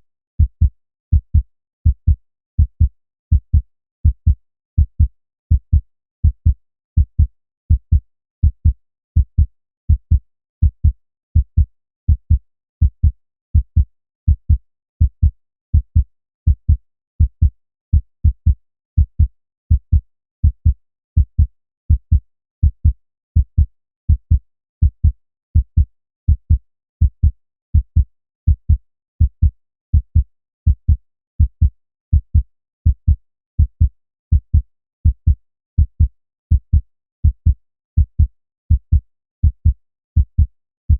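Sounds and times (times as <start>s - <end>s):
heartbeat thumps: 30.8s - 40.5s.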